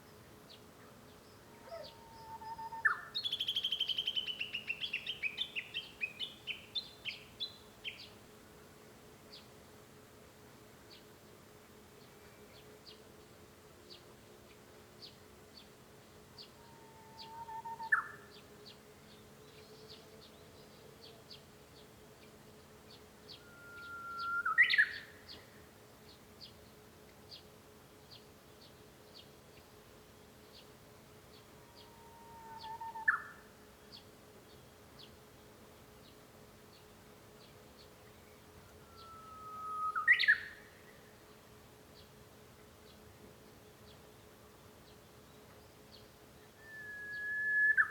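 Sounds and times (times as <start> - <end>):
bird singing whistled song: 1.7 - 7.6, 17.1 - 18.2, 23.3 - 25.2, 31.8 - 33.4, 38.9 - 40.7, 46.4 - 47.9.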